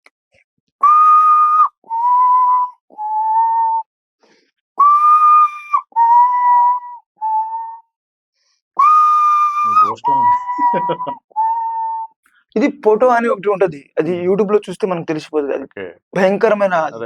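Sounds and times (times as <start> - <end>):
man whistling bird call: 0.8 - 3.9, 4.8 - 7.9, 8.8 - 12.1.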